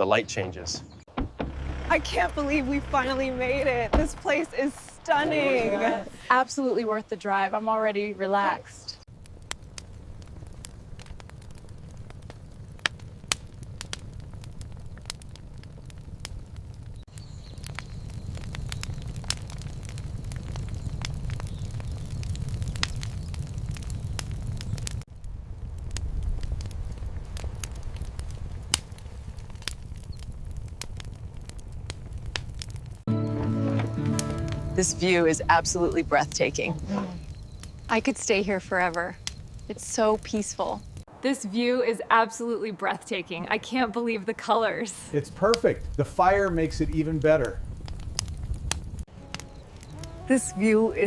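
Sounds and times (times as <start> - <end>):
open fire crackling: 0.0 - 51.0
low rumble: 32.9 - 38.3.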